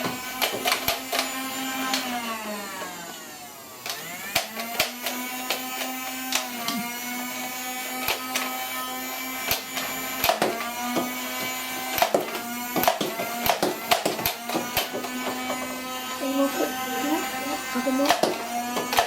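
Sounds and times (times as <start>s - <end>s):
flywheel motors whining: 0.0s - 19.0s
toy blaster firing clicks: 0.3s - 2.2s, 3.8s - 6.8s, 7.6s - 16.0s, 17.8s - 19.0s.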